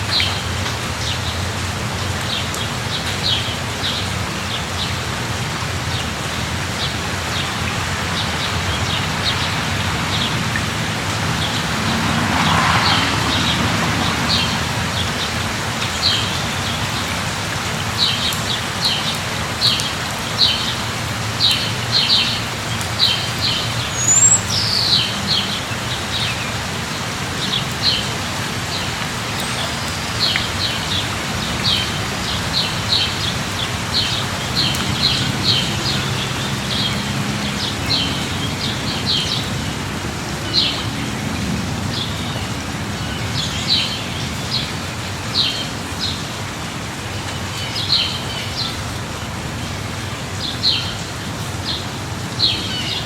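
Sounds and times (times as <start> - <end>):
light rain falling: 0.0 - 53.0
small birds chirping: 23.0 - 25.5.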